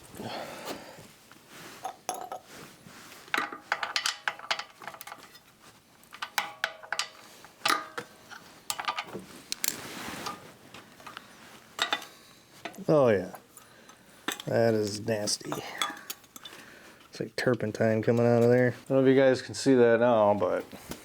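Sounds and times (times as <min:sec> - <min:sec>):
metal tools clicking on metal: 0:08.7 - 0:09.8.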